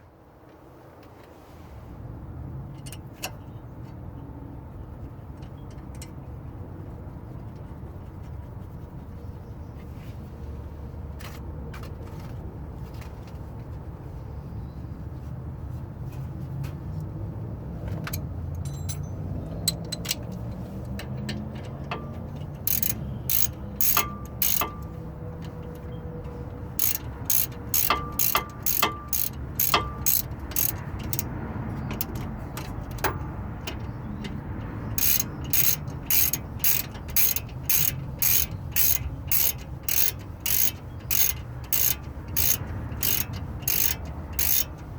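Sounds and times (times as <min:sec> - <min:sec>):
ratchet wrench clicking: 0:18.6 - 0:44.9.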